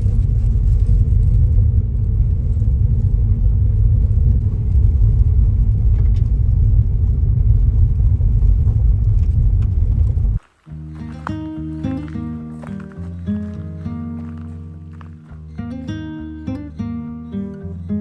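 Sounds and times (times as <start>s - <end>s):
loud low rumble: 0.0s - 10.4s.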